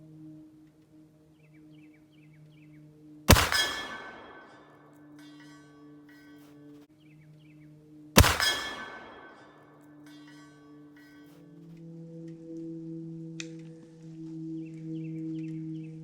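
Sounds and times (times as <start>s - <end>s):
low drone music: 0.0s - 16.0s
rifle shot: 3.3s - 4.8s, 8.2s - 9.7s.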